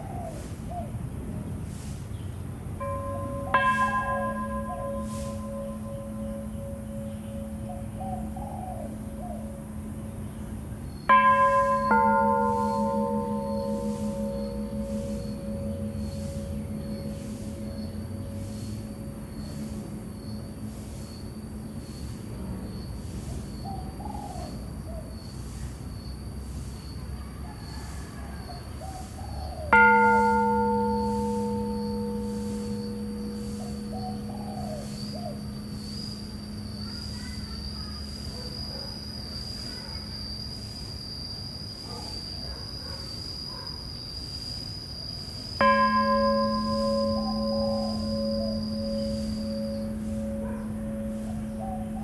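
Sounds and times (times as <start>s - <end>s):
low steady rumble: 2.5s - 23.5s, 45.6s - 52.0s
temple bell ringing: 2.8s - 22.4s, 29.7s - 39.2s, 45.6s - 52.0s
faint high pulsing tone: 2.8s - 23.0s, 29.7s - 39.4s, 45.6s - 52.0s
steady high-pitched drone: 2.8s - 24.7s, 29.7s - 39.4s, 45.5s - 52.0s.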